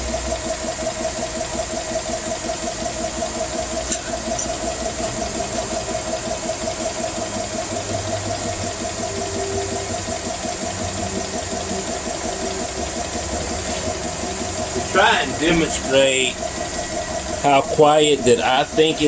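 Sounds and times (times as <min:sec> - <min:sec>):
air compressor pumping: 0:00.0 - 0:19.0.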